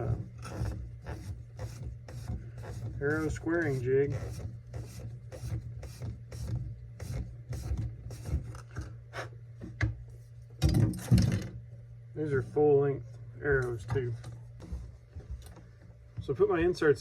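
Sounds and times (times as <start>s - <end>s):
arrow shaft scraping in jig: 0.0s - 9.4s.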